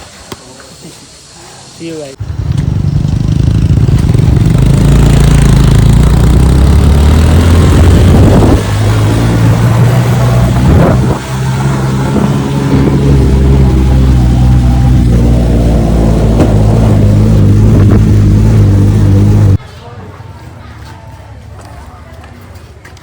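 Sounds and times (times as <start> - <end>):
motorbike engine running: 2.2 - 19.6
wind rush: 3.4 - 19.6.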